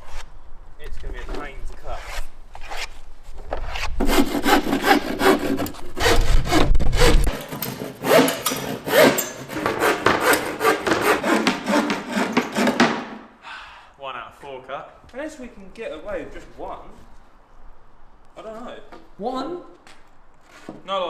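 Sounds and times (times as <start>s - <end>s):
handsaw cutting plywood: 3.6s - 13.3s.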